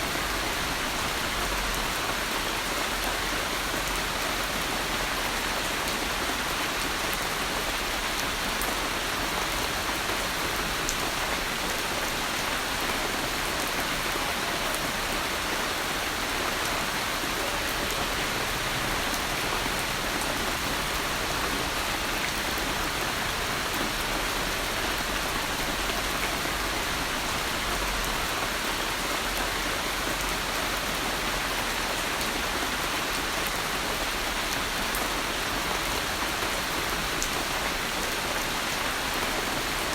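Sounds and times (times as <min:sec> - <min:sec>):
steady rain patter: 0:00.0 - 0:39.9.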